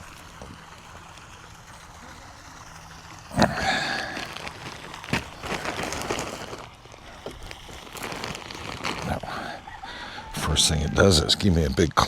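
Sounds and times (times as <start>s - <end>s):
bag rustling: 3.3s - 9.8s.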